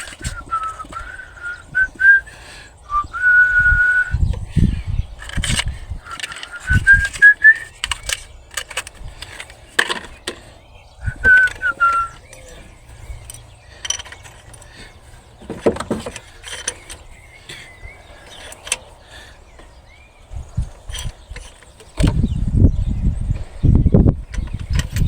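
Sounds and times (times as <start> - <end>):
hand tools clicking and knocking: 0.0 - 2.2, 5.2 - 19.8, 20.7 - 22.3, 24.3 - 25.0
person whistling: 0.2 - 4.3, 6.2 - 7.8, 11.0 - 12.5.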